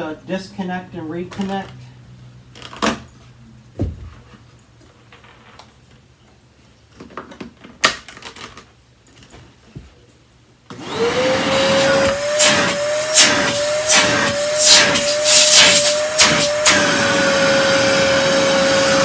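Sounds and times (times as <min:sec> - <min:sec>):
vacuum cleaner running: 0:10.7 - 0:19.0.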